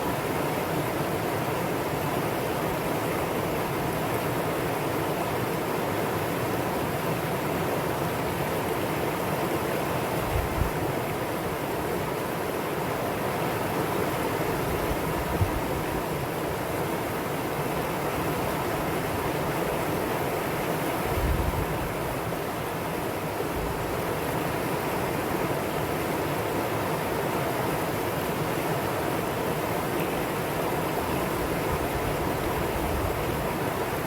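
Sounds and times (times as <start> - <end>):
stream running over rocks: 21.8 - 34.0.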